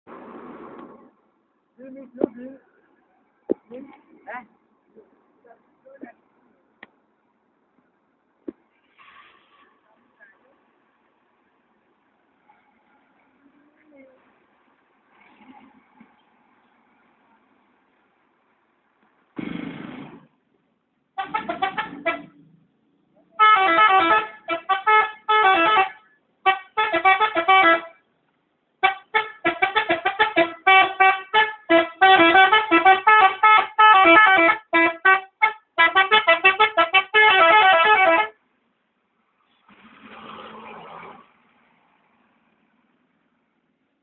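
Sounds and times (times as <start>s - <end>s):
multi-tone musical bus horn: 21.2s - 22.5s, 23.4s - 28.1s, 28.8s - 38.4s.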